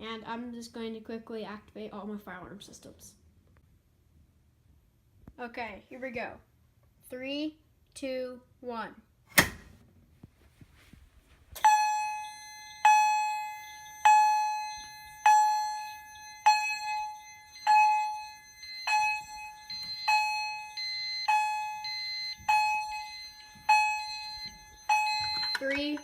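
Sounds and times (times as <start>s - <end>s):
fire alarm chime ringing: 11.6s - 26.0s.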